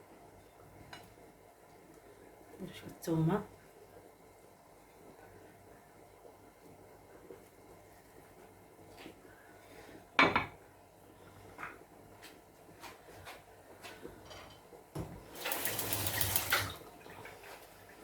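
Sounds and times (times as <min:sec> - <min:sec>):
running water: 0:15.2 - 0:18.0.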